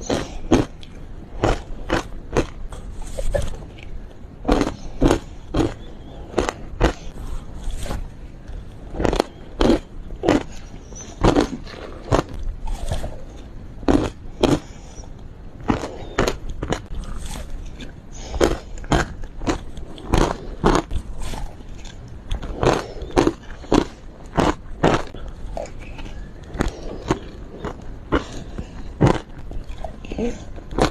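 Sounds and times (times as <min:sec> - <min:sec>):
teeth crunching ice: 0:00.0 - 0:07.2, 0:08.8 - 0:30.9
soft chewing: 0:00.0 - 0:30.9.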